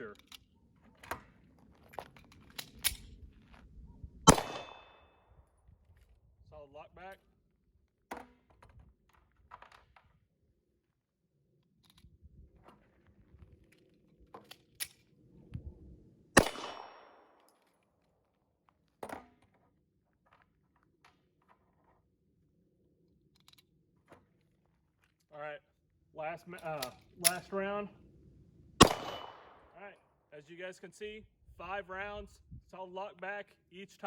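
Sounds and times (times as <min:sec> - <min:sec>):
clicks of gun handling: 0:00.1 - 0:03.1, 0:11.7 - 0:12.1, 0:13.6 - 0:15.1, 0:23.3 - 0:25.3, 0:26.5 - 0:27.5
pistol slide locking back: 0:02.4 - 0:03.1, 0:14.4 - 0:15.0, 0:26.6 - 0:27.4
pistol shot: 0:04.3 - 0:05.0, 0:16.4 - 0:17.4, 0:28.8 - 0:29.7.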